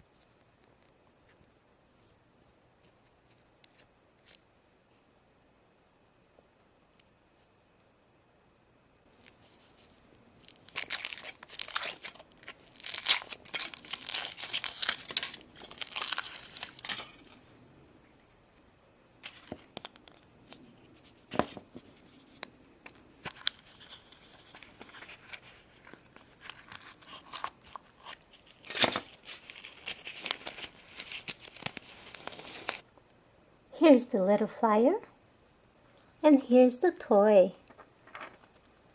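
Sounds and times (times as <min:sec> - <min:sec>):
foil wrapper crinkling: 0:09.2 - 0:17.4, 0:23.2 - 0:32.8.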